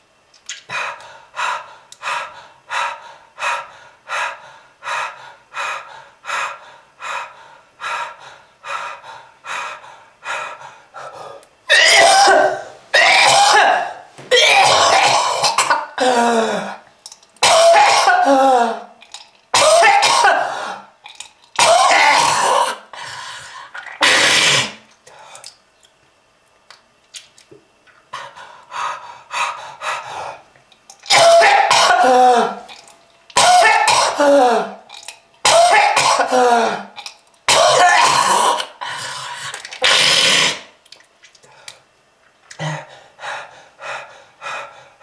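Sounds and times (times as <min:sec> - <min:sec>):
person coughing: 0:11.7 - 0:16.8, 0:17.4 - 0:18.9, 0:19.6 - 0:20.7, 0:21.6 - 0:22.9, 0:31.1 - 0:32.7, 0:33.4 - 0:34.8, 0:35.5 - 0:38.6.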